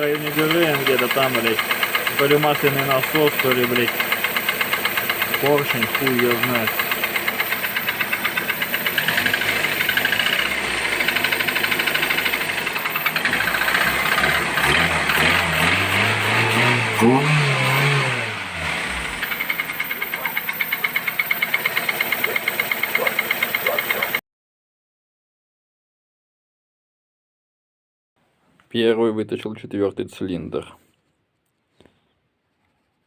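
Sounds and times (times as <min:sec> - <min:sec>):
car engine with metallic knock: 0:00.1 - 0:17.4, 0:19.0 - 0:24.2.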